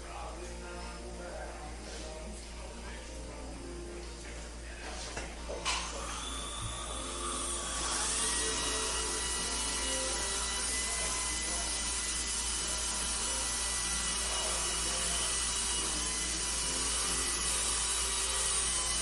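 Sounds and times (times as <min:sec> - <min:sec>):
dental equipment hissing: 0:05.6 - 0:19.0
high-pitched whine: 0:05.8 - 0:19.0.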